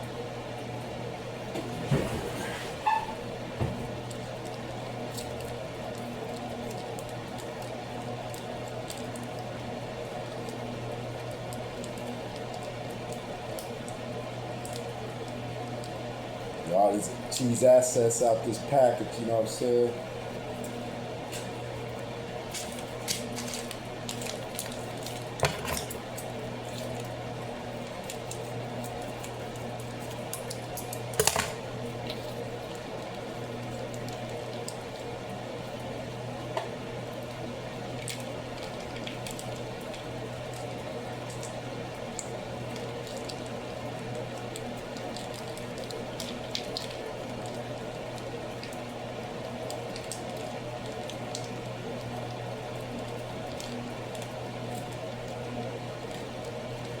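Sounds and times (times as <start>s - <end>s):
steady low hum: 0.0s - 57.0s
pot of pasta bubbling: 36.8s - 57.0s.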